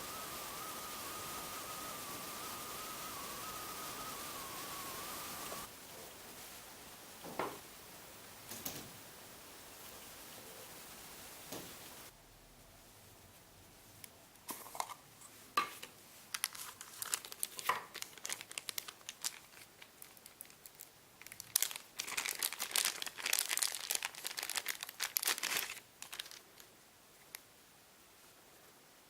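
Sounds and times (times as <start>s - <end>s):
hands crinkling thin plastic: 15.8s - 27.5s.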